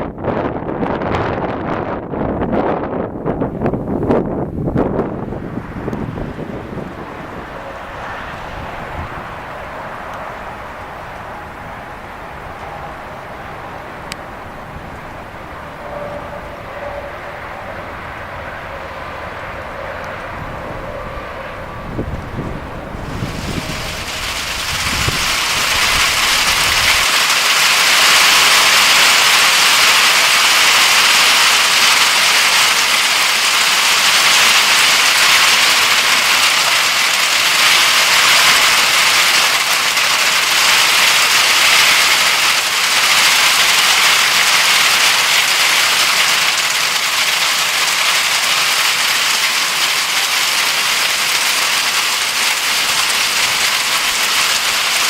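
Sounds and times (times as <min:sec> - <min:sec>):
low thunder rumble: 0:00.6 - 0:27.0
heavy rain pouring: 0:04.4 - 0:55.0.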